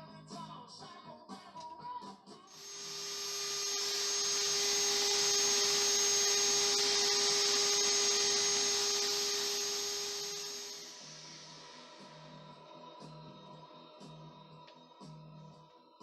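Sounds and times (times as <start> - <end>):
small motor whirring: 2.6 - 11.9.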